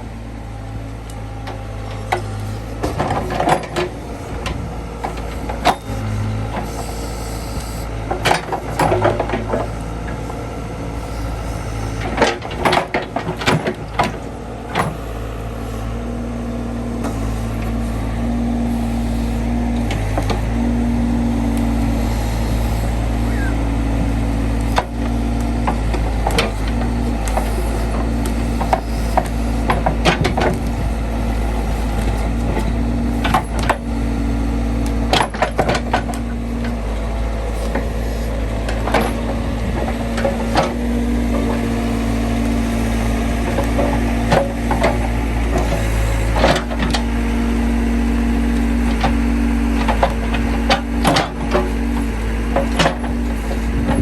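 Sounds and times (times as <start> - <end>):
backhoe engine running: 0.0 - 54.0
machine knocks and clanks: 1.4 - 6.9, 8.0 - 10.4, 11.0 - 15.4, 23.9 - 33.9, 48.5 - 54.0.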